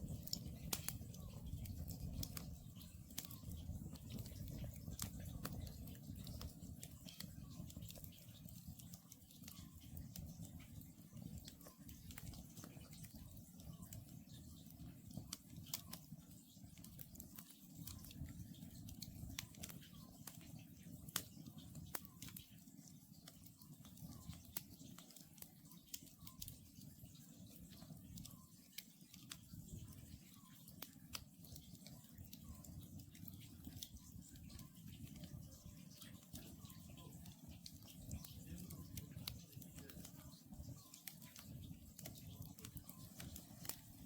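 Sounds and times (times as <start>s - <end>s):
fire low rumble: 0.0s - 16.0s, 32.4s - 44.0s
campfire crackling and popping: 0.0s - 44.0s.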